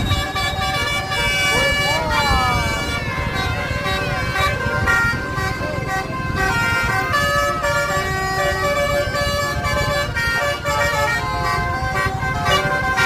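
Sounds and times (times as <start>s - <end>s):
bus engine rumble: 0.0s - 13.0s
multi-trumpet air horn tune: 0.0s - 13.0s
road noise: 0.0s - 13.0s.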